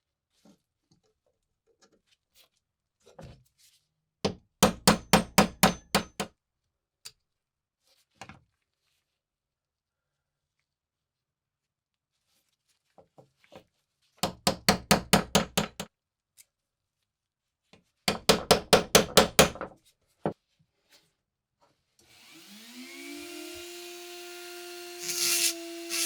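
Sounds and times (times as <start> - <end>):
electric rotary tool spinning: 22.1 - 26.0
hand tool strokes on metal: 24.8 - 26.0.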